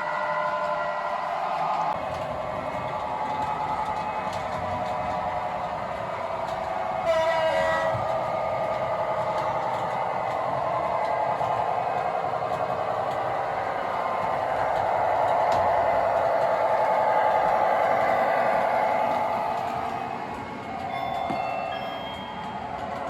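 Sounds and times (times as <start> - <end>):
model locomotive diesel engine sound: 0.0 - 23.0
locomotive horn: 7.0 - 8.1.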